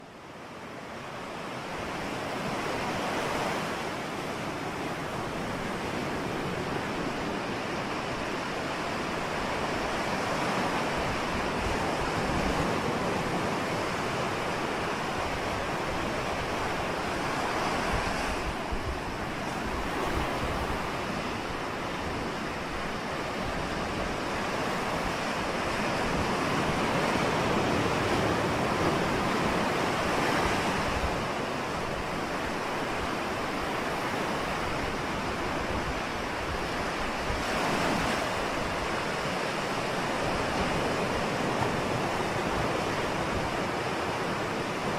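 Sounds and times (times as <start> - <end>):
ocean waves breaking: 0.0 - 44.9.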